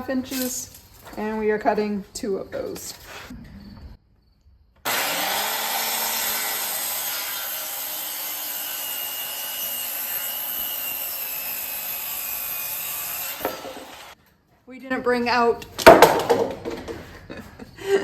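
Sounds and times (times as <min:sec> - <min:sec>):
circular saw cutting wood: 0:04.8 - 0:14.2.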